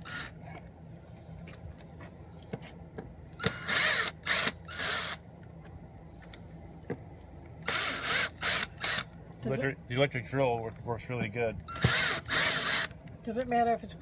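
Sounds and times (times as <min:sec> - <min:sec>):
electric drill whirring: 0:00.0 - 0:00.3, 0:03.4 - 0:05.2, 0:07.6 - 0:09.1, 0:11.7 - 0:13.0.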